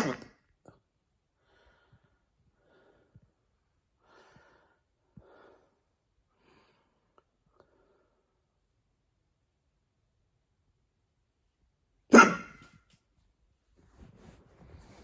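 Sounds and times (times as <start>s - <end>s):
person breathing softly: 1.4s - 8.5s
hiccup clicks in throat: 12.1s - 12.7s.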